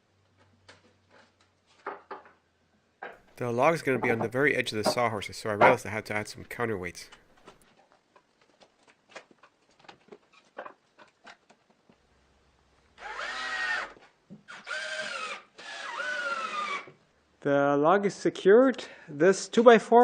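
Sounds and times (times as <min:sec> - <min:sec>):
light knocks and clicks: 0:03.9 - 0:05.8
power drill whining: 0:13.0 - 0:17.0.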